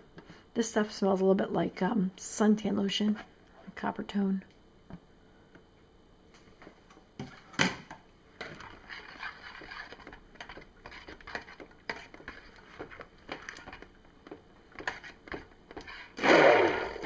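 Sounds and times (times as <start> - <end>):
utensil knocking and scraping container: 8.4 - 13.9.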